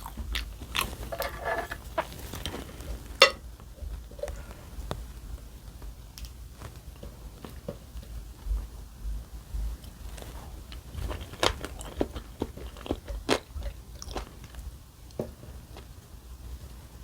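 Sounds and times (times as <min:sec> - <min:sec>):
chewing: 0:00.0 - 0:04.7, 0:09.8 - 0:15.9.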